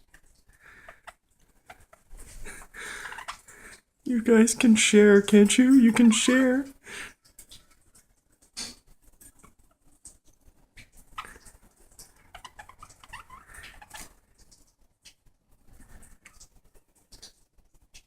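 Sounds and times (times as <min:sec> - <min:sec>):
small birds chirping and squawking: 0:00.6 - 0:04.4, 0:11.0 - 0:14.6.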